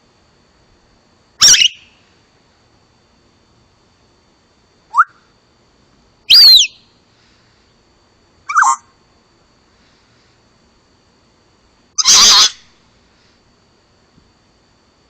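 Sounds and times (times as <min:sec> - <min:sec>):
faint high tone hum: 0:00.0 - 0:15.0
parrot calls: 0:01.4 - 0:01.9, 0:06.3 - 0:06.8, 0:08.5 - 0:08.9, 0:12.0 - 0:12.7.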